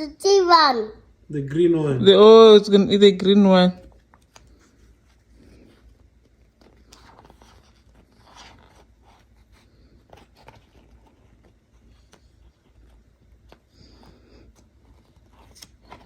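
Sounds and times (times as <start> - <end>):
book pages rustling: 3.8 - 16.0.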